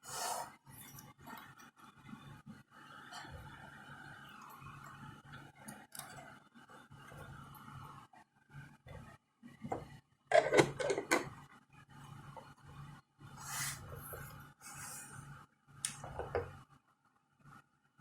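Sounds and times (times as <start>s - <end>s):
brief scrape: 13.4s - 13.9s.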